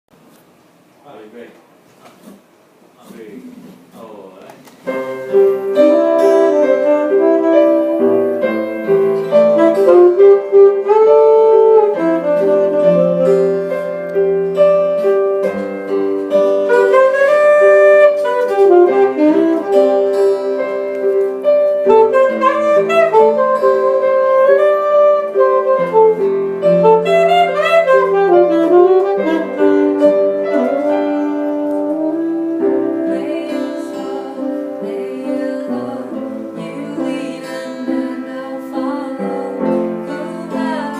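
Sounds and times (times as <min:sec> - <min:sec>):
piano chords: 0:04.8 - 0:40.9
saxophone melody: 0:04.9 - 0:34.8.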